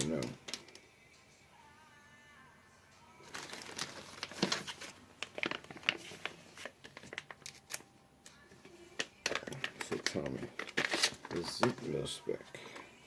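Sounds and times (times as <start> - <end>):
packaging crinkling and rustling: 3.2 - 7.8, 9.0 - 11.9.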